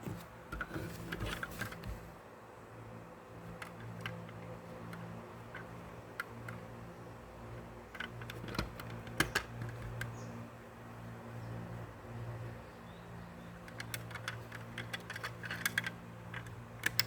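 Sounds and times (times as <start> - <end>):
clicks and taps handling toy car: 3.5 - 6.7, 7.9 - 10.2, 13.6 - 17.0.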